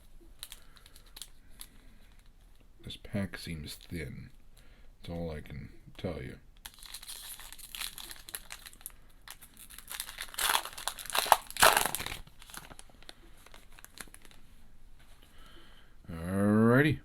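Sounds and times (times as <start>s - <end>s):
wrapper crinkling and tearing: 0.4s - 2.4s, 6.6s - 14.4s.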